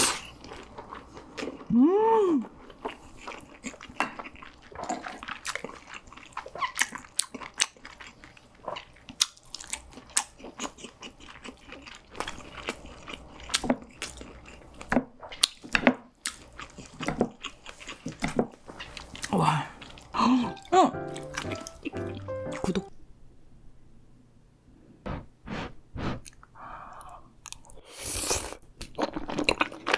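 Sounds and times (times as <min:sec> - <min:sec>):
crunching and chewing: 0:00.0 - 0:01.8, 0:02.4 - 0:20.2, 0:27.4 - 0:29.9.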